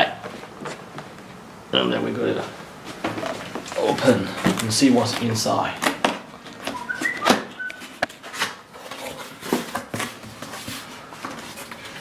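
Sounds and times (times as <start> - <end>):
cardboard box rustling: 2.9 - 12.0.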